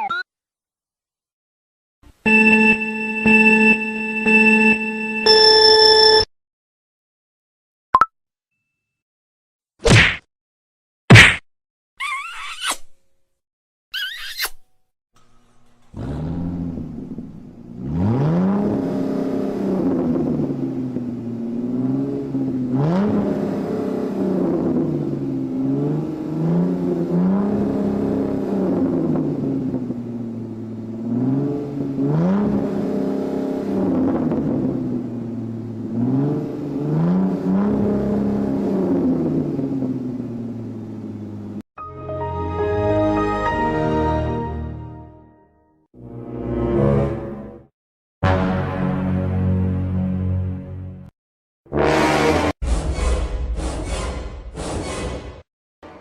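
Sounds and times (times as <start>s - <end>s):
car engine revving: 15.8s - 41.6s, 51.7s - 52.6s.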